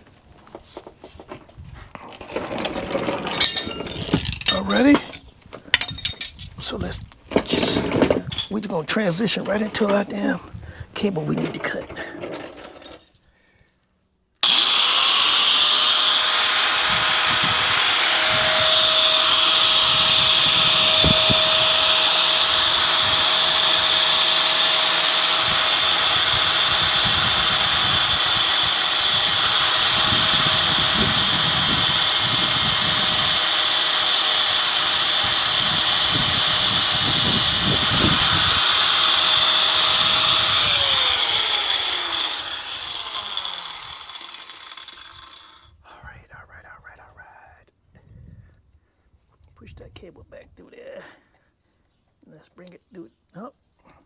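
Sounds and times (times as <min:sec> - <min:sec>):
power cutting tool cutting cable: 0:14.4 - 0:45.7.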